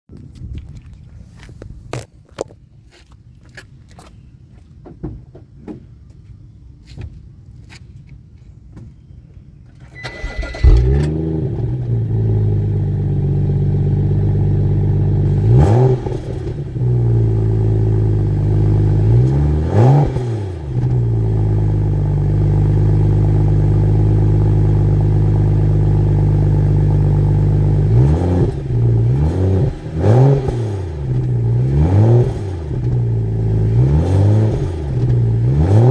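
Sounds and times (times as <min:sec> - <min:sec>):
car engine starting and idling: 0:09.7 - 0:35.9
engine revving: 0:10.0 - 0:35.9.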